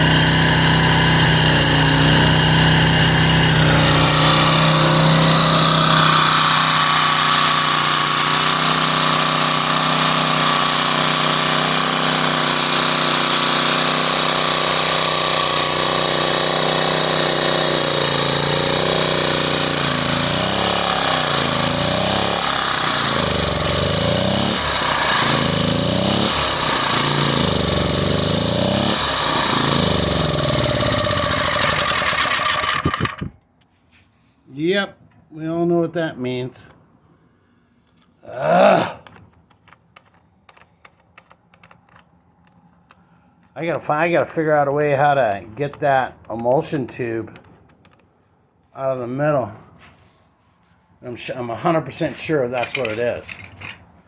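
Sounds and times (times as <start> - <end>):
portable generator engine surging: 0.0 - 33.4.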